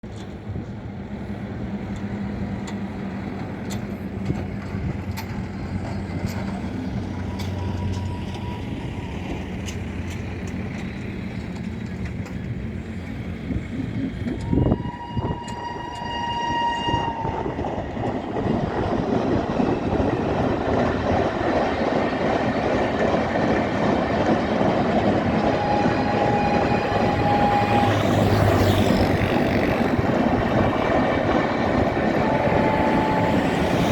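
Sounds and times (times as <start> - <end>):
train rumbling on track: 0.0 - 33.9
shrill train horn: 14.3 - 18.2, 25.0 - 33.9.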